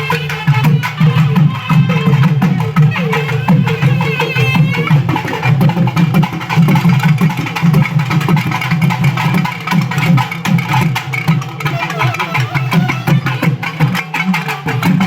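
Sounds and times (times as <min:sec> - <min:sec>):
rapid drum strokes: 0:04.6 - 0:15.0
ornamented melody: 0:11.6 - 0:13.8.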